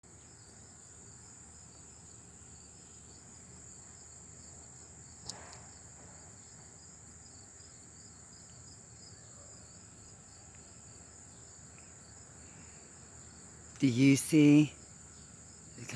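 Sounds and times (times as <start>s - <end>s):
high insect chorus: 0.0s - 15.9s.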